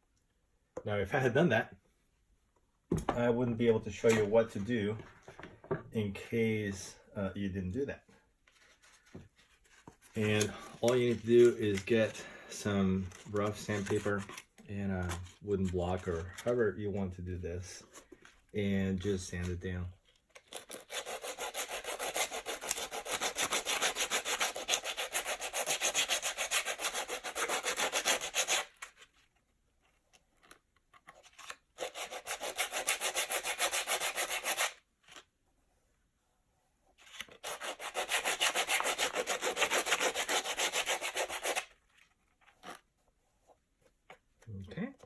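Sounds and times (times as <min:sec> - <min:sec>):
sandpaper scraping: 0:20.6 - 0:28.8, 0:31.8 - 0:34.8, 0:37.0 - 0:42.1.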